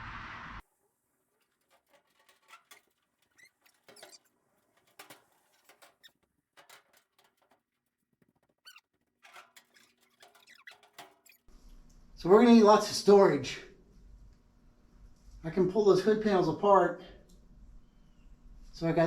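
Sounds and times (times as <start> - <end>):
sheet metal panels tapping: 1.4 - 11.4
sheet metal panels squeaking: 1.4 - 11.5.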